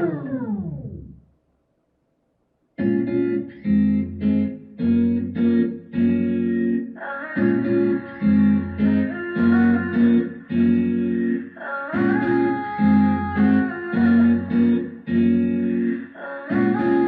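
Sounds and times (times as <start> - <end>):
guitar-led pop song on speaker: 0.0 - 1.1, 2.8 - 17.0.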